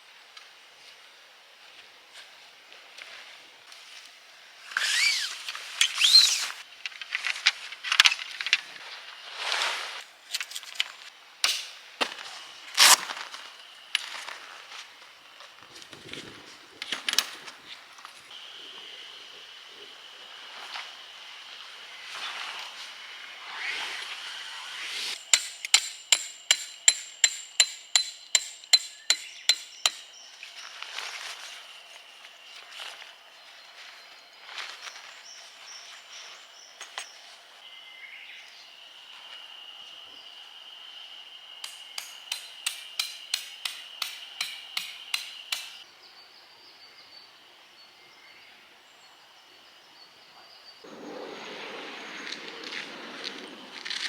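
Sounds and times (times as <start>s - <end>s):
hammer striking metal tent stake: 11.4s - 11.8s, 25.2s - 30.2s, 41.6s - 45.8s
high-pitched whine: 18.4s - 25.4s.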